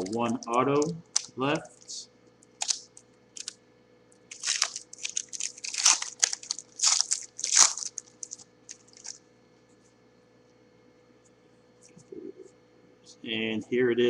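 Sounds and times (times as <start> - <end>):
card pack wrapper crinkling and tearing: 0.0 - 2.0, 2.6 - 3.5, 4.3 - 9.2.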